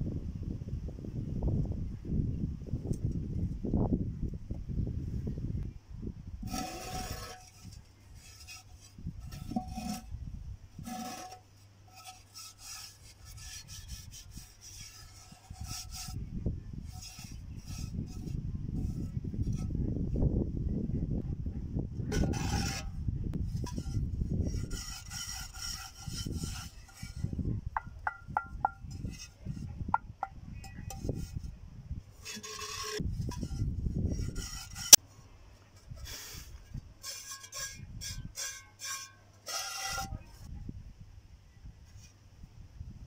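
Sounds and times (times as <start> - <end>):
rough scraping and rubbing: 6.4 - 10.2, 10.8 - 19.8, 22.0 - 35.1, 35.7 - 40.5.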